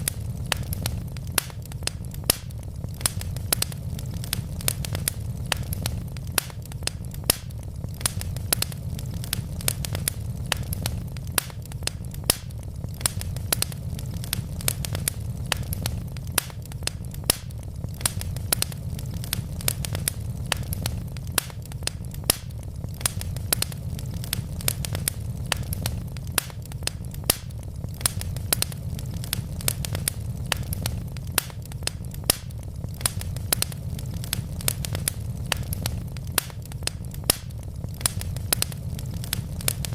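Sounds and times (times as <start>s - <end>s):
wood fire crackling and popping: 0.0s - 39.9s.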